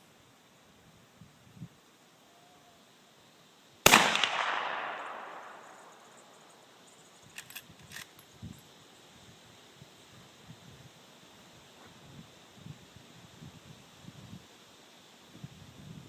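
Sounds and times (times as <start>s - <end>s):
rifle shot with echo: 3.8s - 6.0s.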